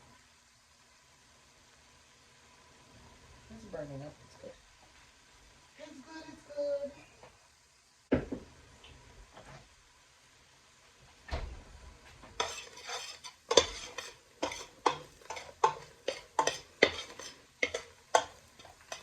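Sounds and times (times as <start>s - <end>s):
food frying in oil: 0.0s - 19.0s
knock: 8.1s - 8.5s
spoon stirring and scraping pot: 12.2s - 19.0s.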